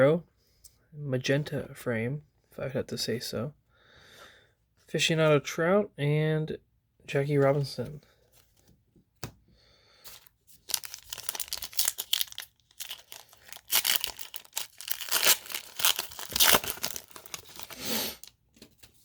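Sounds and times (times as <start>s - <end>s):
wrapper tearing and crinkling: 10.1s - 18.3s.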